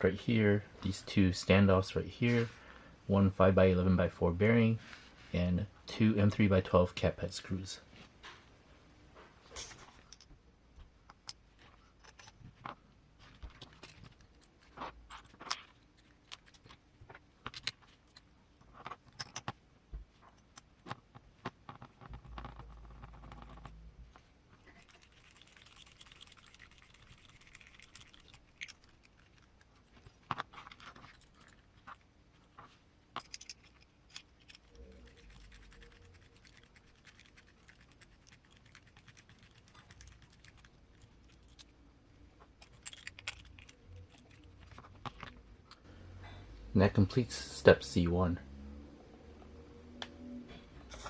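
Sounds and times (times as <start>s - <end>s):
small parts clicking and tapping: 12.0s - 19.6s, 24.6s - 32.0s, 33.1s - 41.8s, 42.5s - 45.9s.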